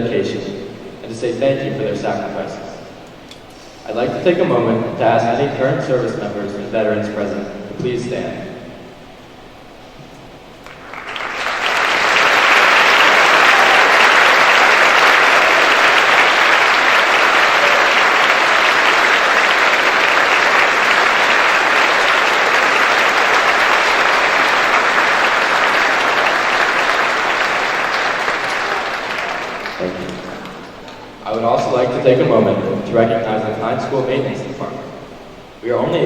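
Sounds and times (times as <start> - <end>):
audience applauding: 10.6 - 31.4.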